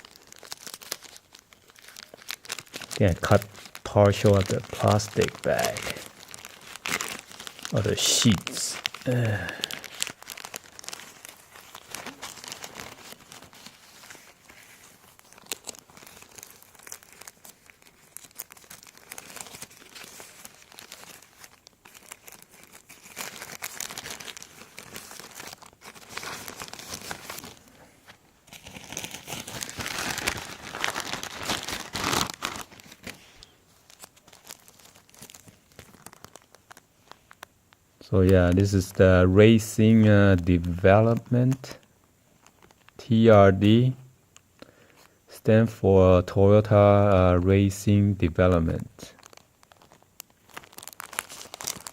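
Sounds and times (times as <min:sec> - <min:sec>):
plastic bag crinkling: 0:00.0 - 0:43.3, 0:48.6 - 0:51.9.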